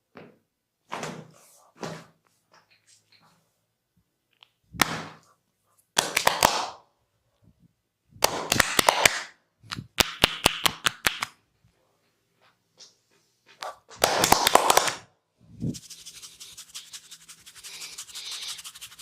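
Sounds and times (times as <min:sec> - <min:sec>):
hands slapping body: 0:04.7 - 0:05.2, 0:06.0 - 0:06.8, 0:08.2 - 0:11.4, 0:13.6 - 0:15.0.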